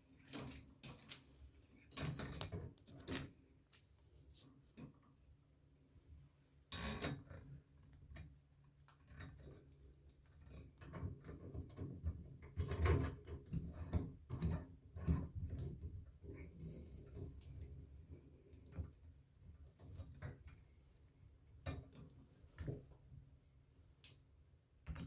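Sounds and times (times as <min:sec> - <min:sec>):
shower fittings handled by hand: 0:00.0 - 0:05.2.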